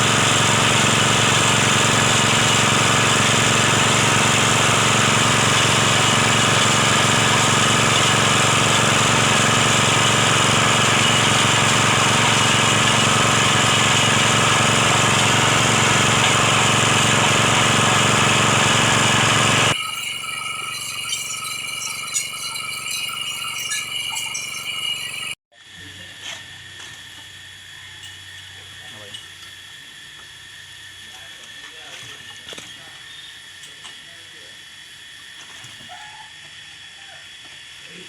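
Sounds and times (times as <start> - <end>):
drilling machine engine running: 0.0 - 25.4.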